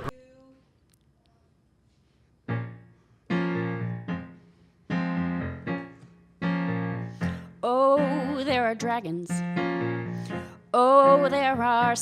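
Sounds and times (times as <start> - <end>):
piano chords: 2.4 - 12.0.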